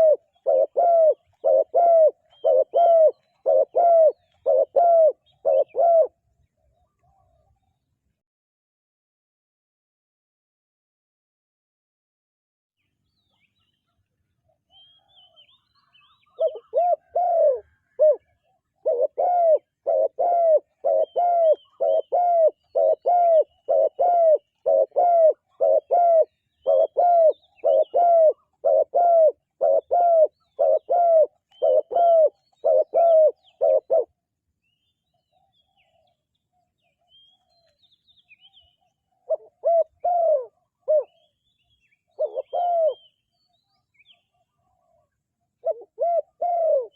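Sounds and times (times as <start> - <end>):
dove cooing: 0.0 - 6.2, 15.3 - 34.2, 38.8 - 41.3, 42.1 - 43.1, 44.0 - 46.9
small birds chirping: 0.0 - 8.0, 12.8 - 46.9.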